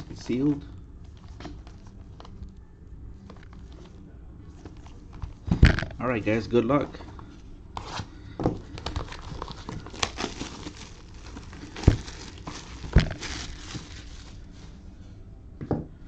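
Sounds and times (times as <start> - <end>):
plastic wrapping crinkling: 8.6 - 14.8.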